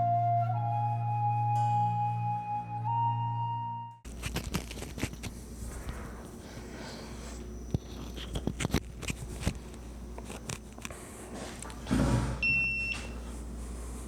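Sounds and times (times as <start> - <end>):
handling knocks and clicks: 7.6 - 11.8.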